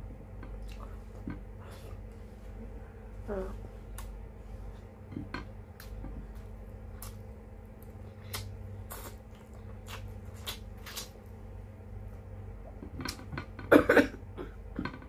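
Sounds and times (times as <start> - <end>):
steady low hum: 0.0 - 15.0
wet chewing and lip smacks: 7.0 - 11.2.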